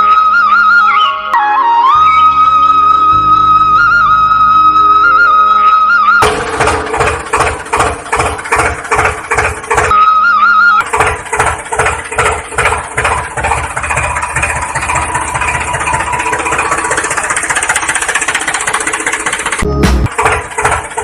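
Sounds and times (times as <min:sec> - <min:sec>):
tractor engine chugging: 0:06.2 - 0:21.0.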